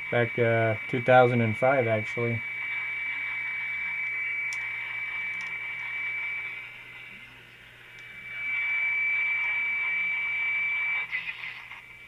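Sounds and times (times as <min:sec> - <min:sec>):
radio static hissing: 0:00.0 - 0:12.0
high-pitched radio whistle: 0:00.1 - 0:07.4, 0:08.1 - 0:11.8.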